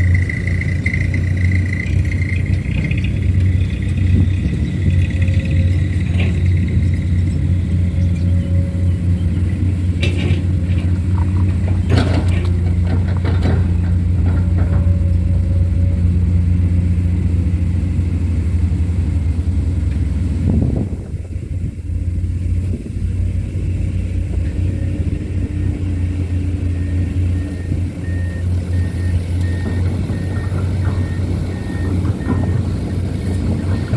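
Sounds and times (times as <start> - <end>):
heavy diesel engine running: 0.0 - 33.9.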